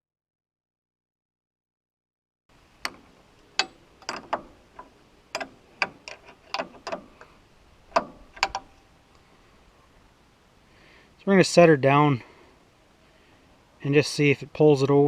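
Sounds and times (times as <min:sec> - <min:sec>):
metallic clicks and clinks: 0:03.6 - 0:07.3, 0:07.9 - 0:08.8.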